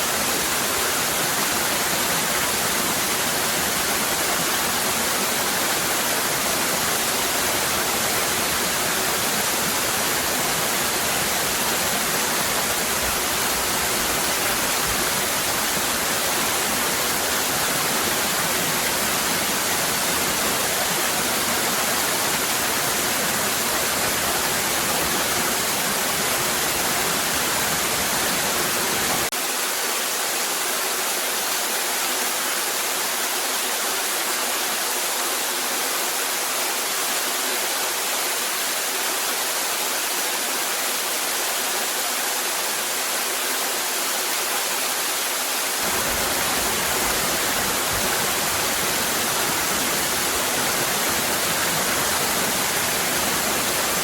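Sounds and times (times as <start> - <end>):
waterfall rushing: 0.0 - 54.0.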